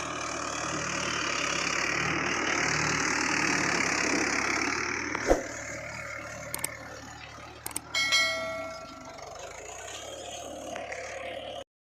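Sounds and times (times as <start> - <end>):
diesel engine hum: 0.0 - 11.7
ringing metallic clang: 8.0 - 9.3.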